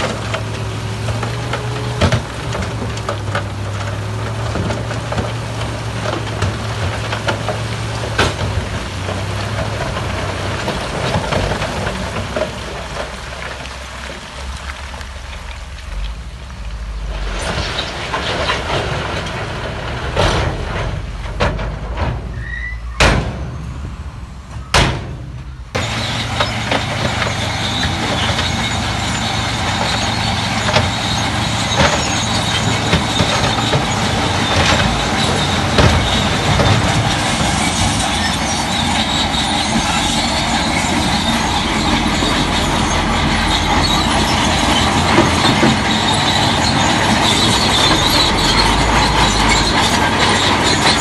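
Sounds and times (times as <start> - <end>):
diesel engines running: 0.0 - 51.0
metal clanks and squeals: 16.8 - 51.0.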